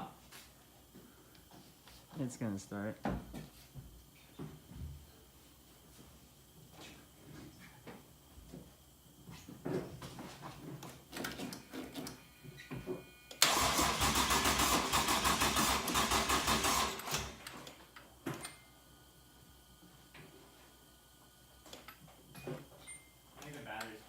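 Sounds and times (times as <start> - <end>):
engine cranking on starter: 13.4 - 17.5.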